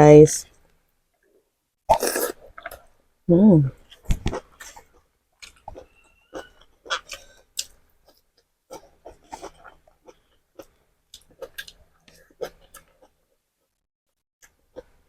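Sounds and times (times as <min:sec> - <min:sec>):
chewing and mouth smacking: 0:04.3 - 0:13.2.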